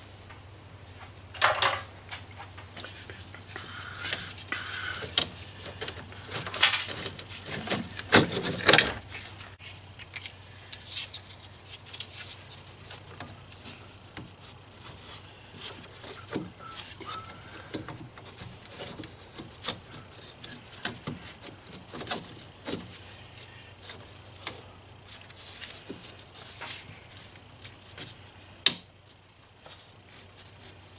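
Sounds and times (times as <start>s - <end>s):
tools clinking and knocking: 1.3s - 2.9s.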